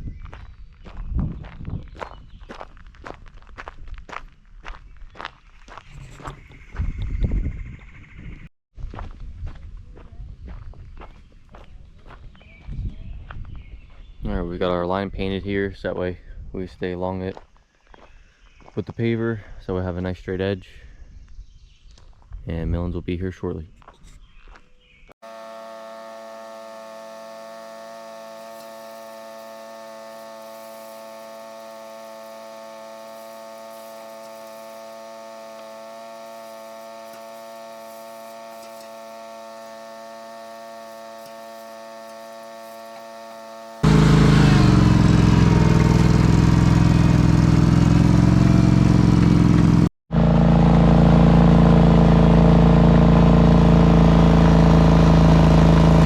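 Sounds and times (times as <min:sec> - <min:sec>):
heavy equipment engine running: 0:25.2 - 0:56.0
machine engine humming: 0:25.2 - 0:56.0.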